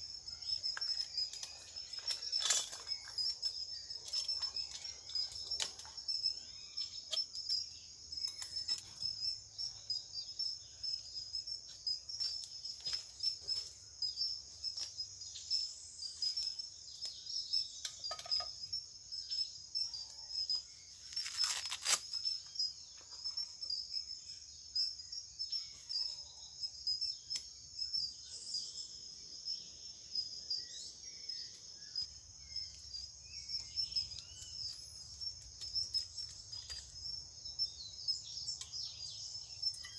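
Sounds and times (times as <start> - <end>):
rustle: 0.0 - 9.2, 19.9 - 23.4
bird chirps: 0.0 - 39.9
insect chorus: 0.0 - 39.9.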